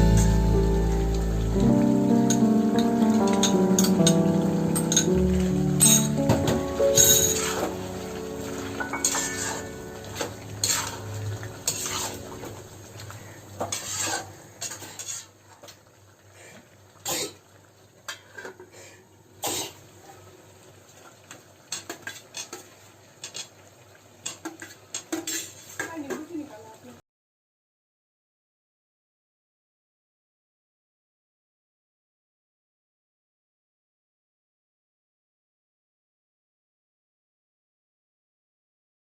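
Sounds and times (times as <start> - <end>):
utensils clinking against dishes: 3.2 - 8.0, 8.6 - 12.6, 24.2 - 26.0.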